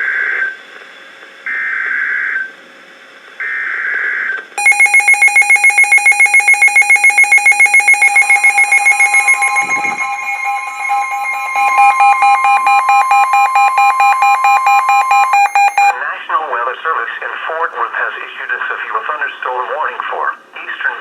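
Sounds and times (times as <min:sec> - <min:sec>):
pulsing electronic alert tone: 0:04.6 - 0:15.9
screechy digital data bursts: 0:04.6 - 0:15.9
steady electronic tone: 0:04.6 - 0:15.9.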